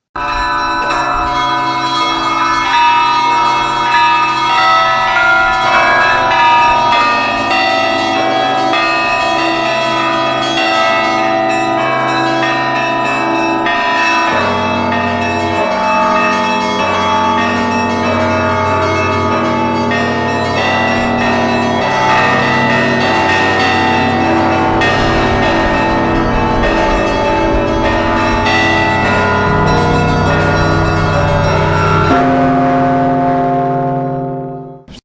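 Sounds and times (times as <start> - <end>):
church bells pealing: 0.2 - 35.0
music with sustained low chord: 23.8 - 34.9.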